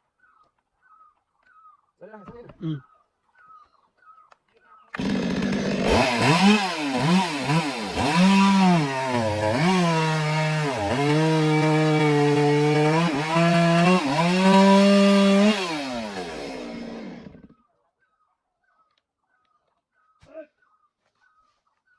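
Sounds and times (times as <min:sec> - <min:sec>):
chainsaw cutting log: 0:05.0 - 0:17.5.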